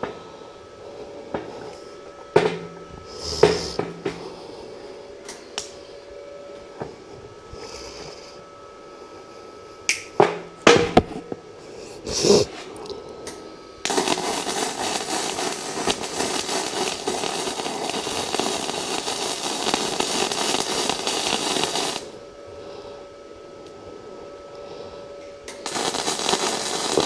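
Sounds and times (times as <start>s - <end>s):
welding arc crackling: 13.9s - 22.2s, 25.5s - 27.0s.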